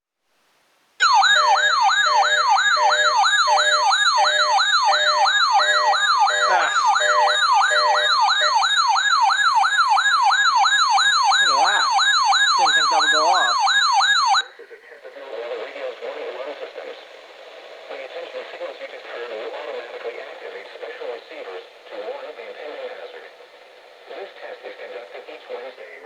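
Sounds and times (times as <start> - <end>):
electronic siren sweeping: 1.0 - 14.4.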